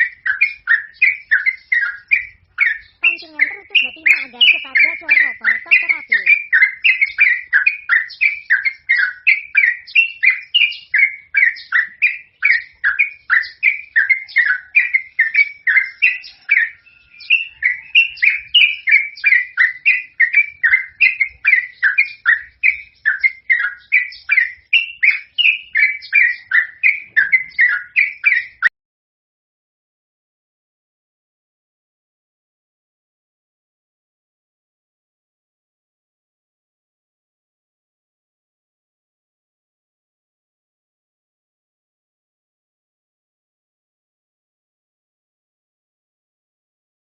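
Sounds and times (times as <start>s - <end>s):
bulbul chirping song: 0.0s - 28.7s.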